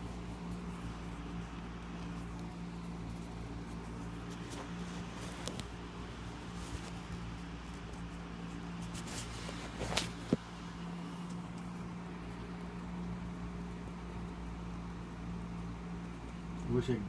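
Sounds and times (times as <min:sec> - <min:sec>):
low electrical hum: 0:00.0 - 0:17.0
brief rustle: 0:00.6 - 0:08.2, 0:08.8 - 0:10.5.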